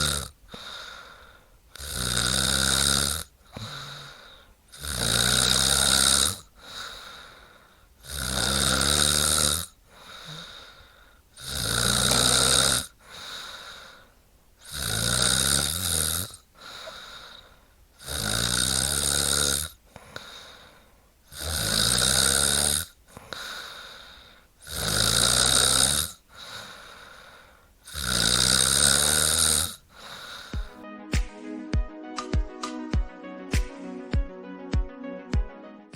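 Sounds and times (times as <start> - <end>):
woman snoring: 0.0 - 30.8
soft breath out: 0.5 - 1.6, 3.4 - 4.6, 6.6 - 7.9, 9.8 - 11.3, 13.0 - 14.2, 16.5 - 17.8, 19.8 - 21.2, 23.1 - 24.6, 26.3 - 27.8, 29.8 - 30.8.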